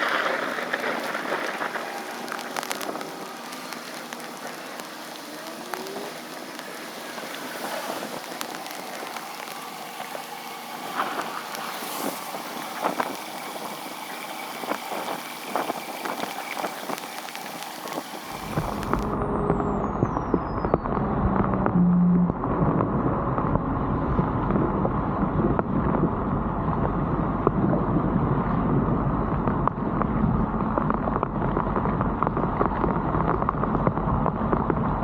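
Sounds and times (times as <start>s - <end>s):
clicks and crackles: 0.0s - 19.2s, 29.3s - 35.0s
water hissing: 0.0s - 19.2s.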